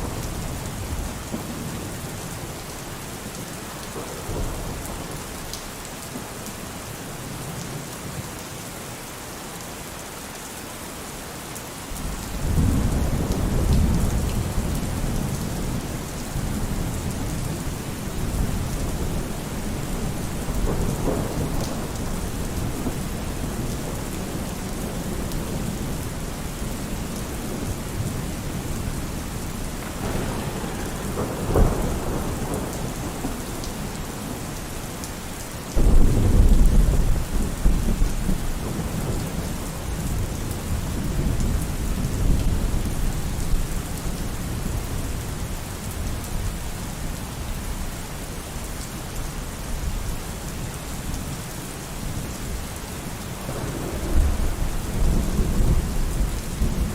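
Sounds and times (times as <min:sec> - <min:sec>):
steady rain: 0:00.0 - 0:56.9
thunder rumbling: 0:12.0 - 0:35.1, 0:35.8 - 0:43.6, 0:53.4 - 0:56.9
loud thunderclap: 0:12.1 - 0:26.0, 0:26.6 - 0:34.6, 0:35.8 - 0:42.8, 0:53.4 - 0:56.9.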